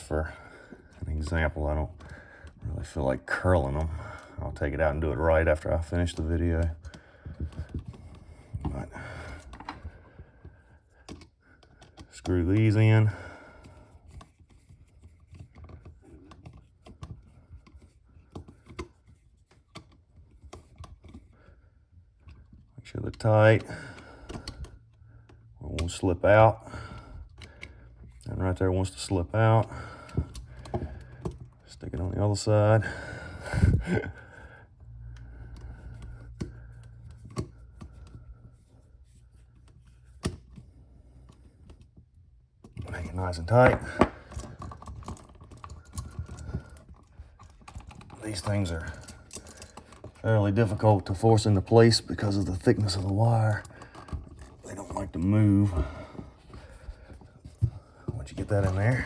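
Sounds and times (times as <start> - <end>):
screwdriver clicking and scraping: 4.6 - 21.4, 22.0 - 26.1, 35.1 - 59.0
screwdriver clicks and scrapes: 42.6 - 59.0.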